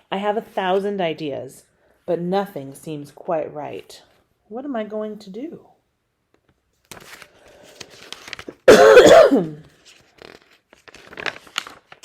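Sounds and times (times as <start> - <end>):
woman coughing: 8.6 - 9.6
faint clicks and rustles: 9.6 - 12.0.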